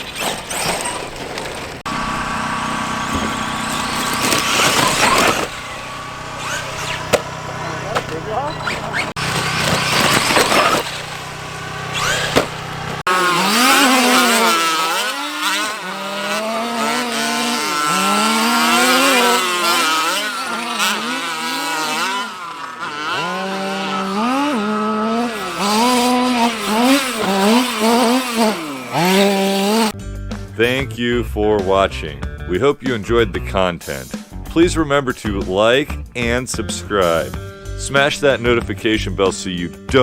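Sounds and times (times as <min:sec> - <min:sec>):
electric motor whine: 0:00.0 - 0:29.9
tyres rushing on dirt: 0:00.0 - 0:29.9.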